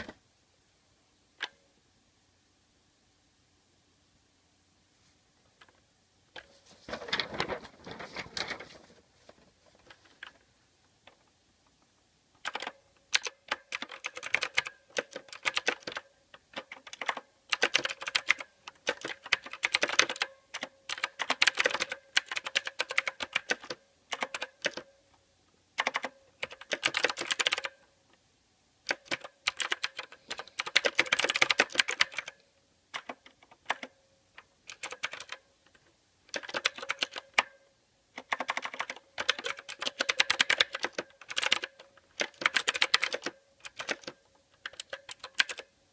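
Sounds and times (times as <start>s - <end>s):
mechanical keyboard typing: 12.4s - 24.9s, 25.8s - 27.8s, 28.8s - 37.6s, 38.2s - 45.7s.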